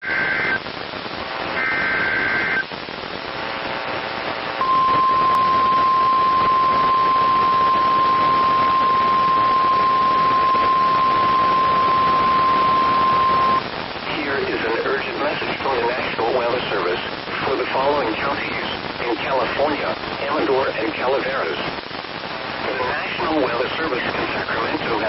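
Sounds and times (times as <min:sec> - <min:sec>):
radio hiss: 0:00.0 - 0:25.0
steady warning alarm tone: 0:04.6 - 0:13.6.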